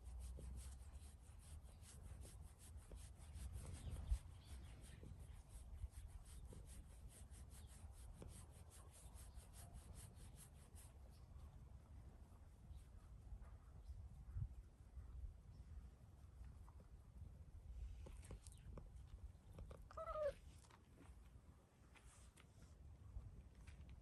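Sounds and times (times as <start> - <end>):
hand rubbing cat fur: 0.0 - 11.1.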